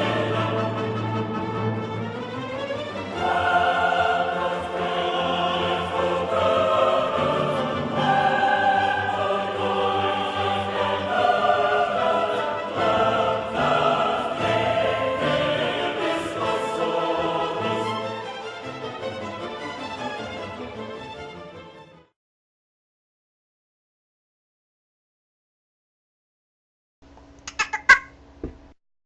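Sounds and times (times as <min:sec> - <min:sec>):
choir singing: 0:00.0 - 0:21.2
orchestra playing: 0:00.0 - 0:22.1.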